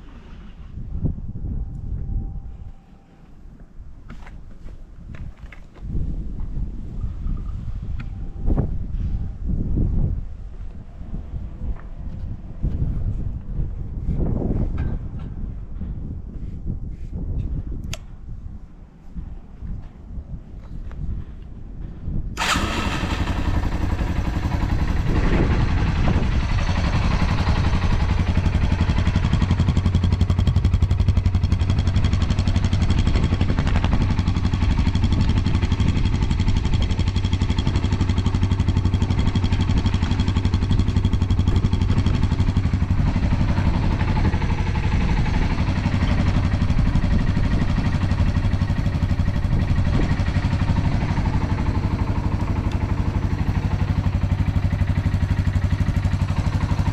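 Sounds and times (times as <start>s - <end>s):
motorcycle engine idling: 22.4s - 56.9s.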